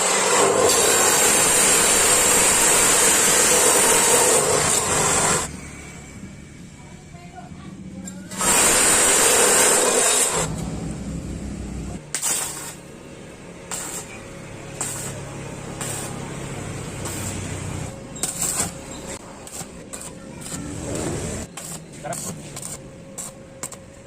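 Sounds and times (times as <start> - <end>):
loud hiss: 0.0 - 5.5, 8.3 - 10.5
small engine running: 0.0 - 6.4, 8.3 - 10.7.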